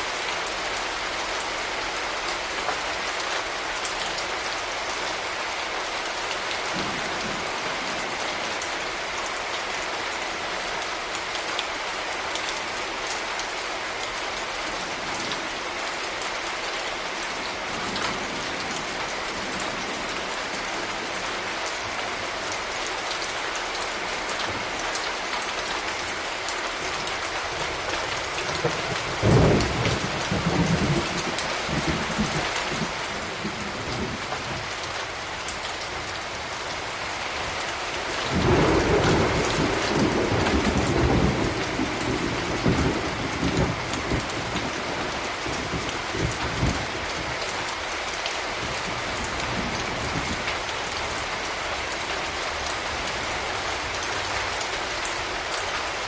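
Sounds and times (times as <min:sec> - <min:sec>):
heavy rain on hard surfaces: 0:00.0 - 0:56.0
low thunder rumble: 0:38.3 - 0:47.0.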